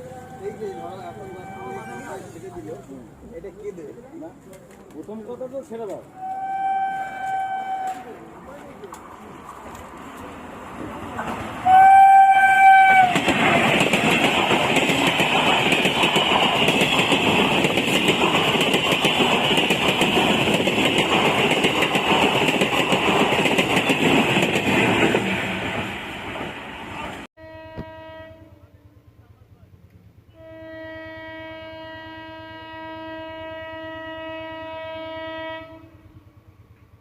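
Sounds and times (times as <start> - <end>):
locomotive horn blast: 0.0 - 2.4, 6.2 - 8.2, 11.6 - 13.2, 27.4 - 28.8, 30.3 - 36.1
train wheels clattering on rails: 13.0 - 26.6.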